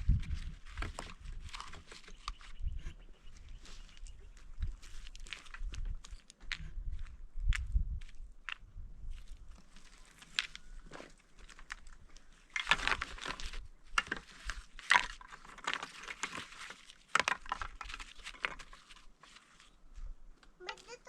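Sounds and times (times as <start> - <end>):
irregular crunches and scrapes: 0.0 - 21.0.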